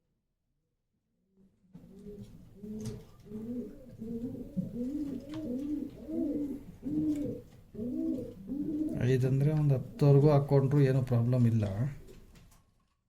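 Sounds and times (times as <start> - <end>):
pigeons cooing: 1.8 - 10.3.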